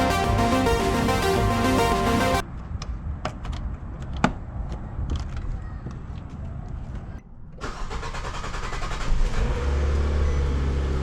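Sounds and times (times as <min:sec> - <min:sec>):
car engine starting and idling: 0:07.6 - 0:11.0.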